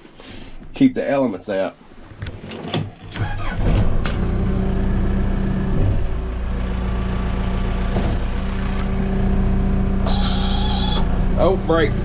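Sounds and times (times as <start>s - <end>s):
diesel engine starting and idling: 3.1s - 12.0s.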